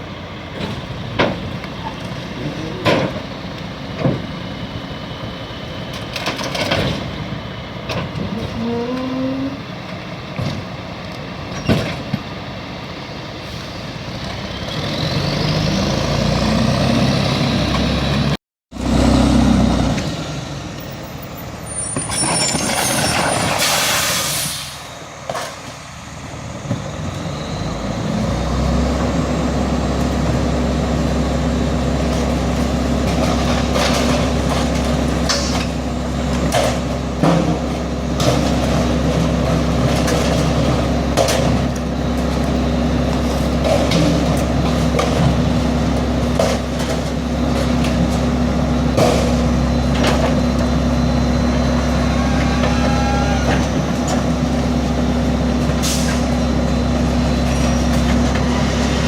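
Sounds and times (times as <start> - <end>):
garbage truck engine: 0.0 - 59.0
air brakes hissing: 21.8 - 25.0, 55.8 - 56.2.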